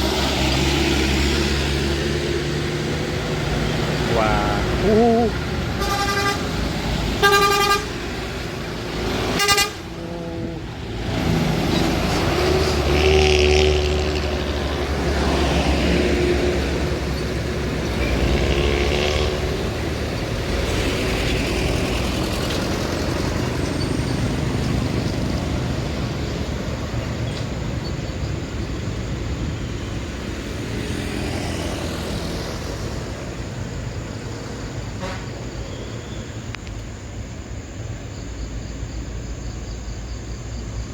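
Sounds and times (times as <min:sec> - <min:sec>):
diesel bus exhaust rumble: 0:00.0 - 0:30.6
road noise: 0:00.0 - 0:40.9
bus horn blasts: 0:05.7 - 0:06.6, 0:07.2 - 0:08.0, 0:09.3 - 0:10.8, 0:12.9 - 0:14.0, 0:17.9 - 0:19.7, 0:34.9 - 0:35.5.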